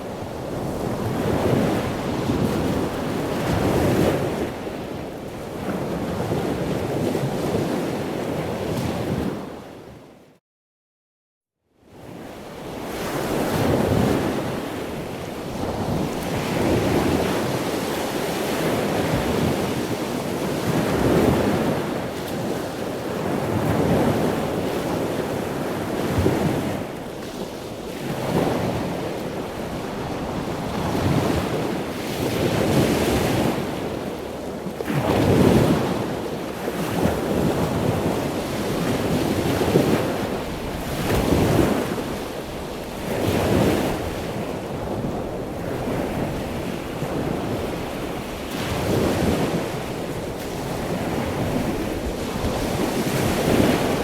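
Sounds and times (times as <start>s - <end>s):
ocean surf waves: 34.9s - 54.0s.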